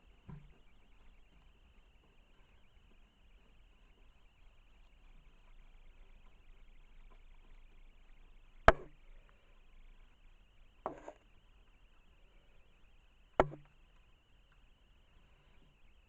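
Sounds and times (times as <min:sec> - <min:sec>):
sharp knocks: 0:13.4 - 0:13.7.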